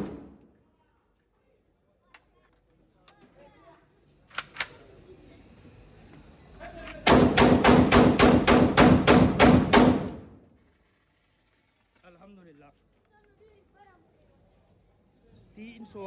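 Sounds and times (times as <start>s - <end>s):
rifle firing rapidly: 0.0s - 0.4s, 7.1s - 10.4s.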